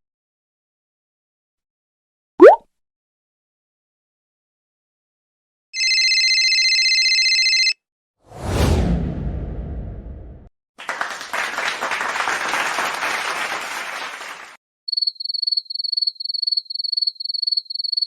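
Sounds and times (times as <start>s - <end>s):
cinematic whoosh: 8.3s - 10.5s
crowd applause: 10.8s - 14.6s
crickets chirping: 14.9s - 18.0s.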